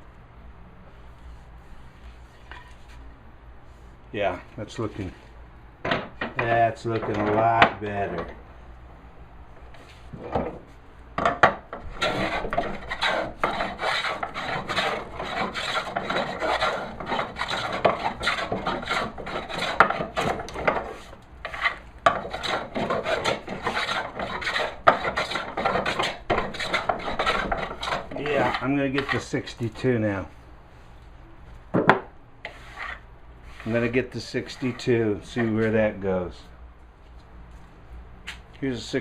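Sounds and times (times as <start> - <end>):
plane scraping across wood: 11.8 - 29.3, 32.4 - 35.5.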